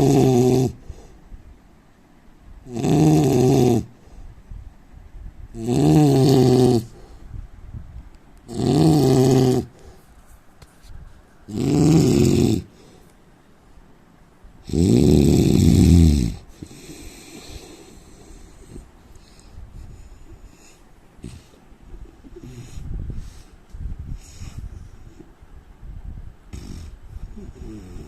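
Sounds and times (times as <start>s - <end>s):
man snoring: 0.0s - 0.8s, 2.7s - 3.9s, 5.6s - 6.9s, 8.5s - 9.7s, 11.5s - 12.7s, 14.6s - 18.0s, 26.5s - 28.0s
quiet breathing: 0.7s - 1.6s, 3.9s - 4.8s, 6.8s - 7.9s, 9.6s - 11.5s, 12.6s - 14.0s, 16.3s - 25.5s, 26.5s - 28.0s.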